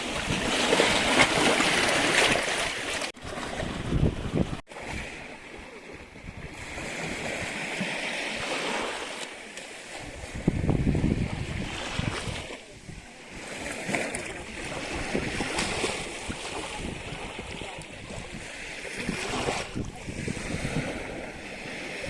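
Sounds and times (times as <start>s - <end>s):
wind buffeting microphone: 0.0s - 7.8s, 10.0s - 22.0s
ocean waves washing in: 0.0s - 22.0s.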